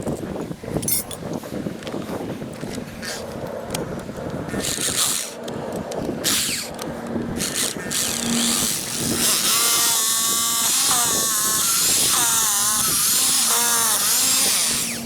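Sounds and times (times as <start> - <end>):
cordless drill whirring: 4.5 - 15.0.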